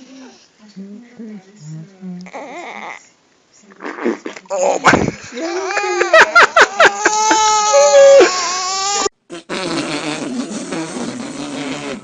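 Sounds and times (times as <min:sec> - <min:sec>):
baby crying: 0:05.5 - 0:09.1.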